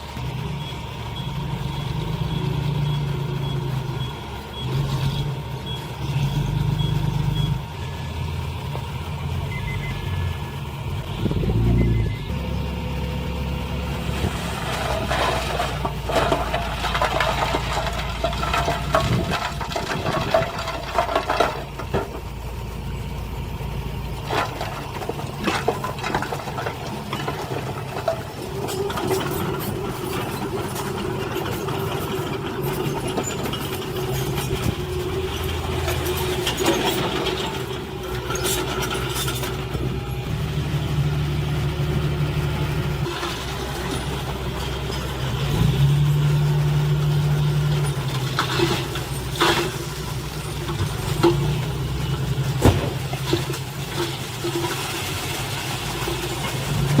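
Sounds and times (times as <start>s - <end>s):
heavy machinery diesel engines: 0.0s - 57.0s
clanks and rattles: 14.2s - 22.4s, 24.2s - 39.9s, 47.3s - 55.0s.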